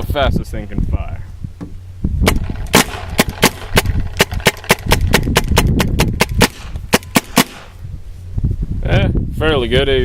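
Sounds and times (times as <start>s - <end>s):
paintball gun firing rapidly: 2.3s - 7.8s.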